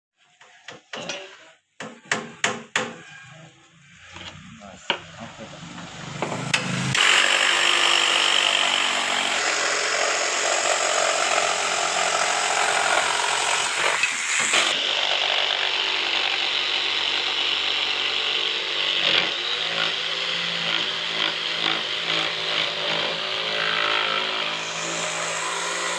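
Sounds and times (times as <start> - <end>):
power tool running: 5.4 - 25.9
sharp clicks and knocks: 5.8 - 7.0.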